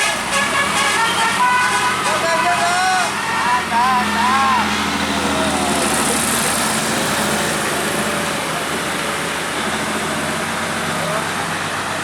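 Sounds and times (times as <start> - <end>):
roadside traffic noise: 0.0 - 12.0
vehicle engine running: 4.0 - 12.0.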